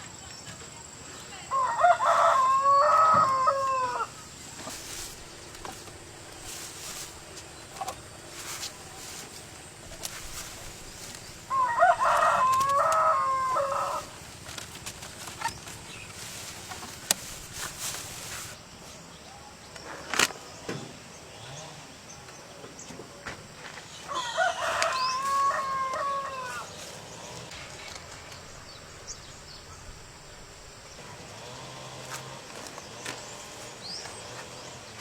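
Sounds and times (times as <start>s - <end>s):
rooster crowing: 1.5s - 4.3s, 11.4s - 14.2s, 24.0s - 27.2s.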